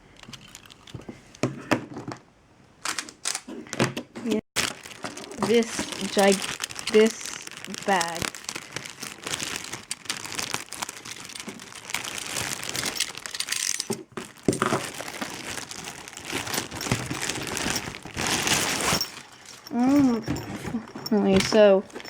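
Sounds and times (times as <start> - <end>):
plastic packaging crinkling: 4.6 - 22.0.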